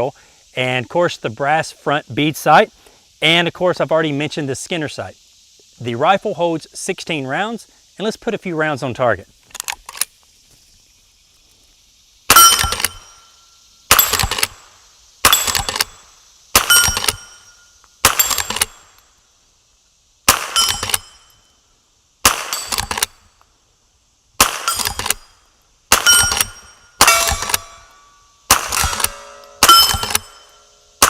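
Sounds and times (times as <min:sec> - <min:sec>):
rifle shots with ringing tail: 0:12.3 - 0:13.2, 0:13.9 - 0:14.6, 0:15.2 - 0:16.0, 0:16.6 - 0:18.9, 0:20.3 - 0:21.3, 0:22.2 - 0:23.2, 0:24.4 - 0:25.3, 0:25.9 - 0:31.0.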